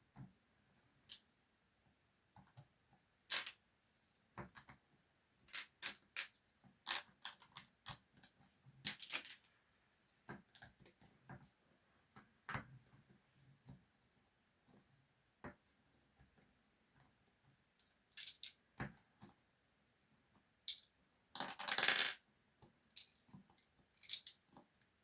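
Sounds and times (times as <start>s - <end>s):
small hard objects clicking: 24.0s - 24.4s.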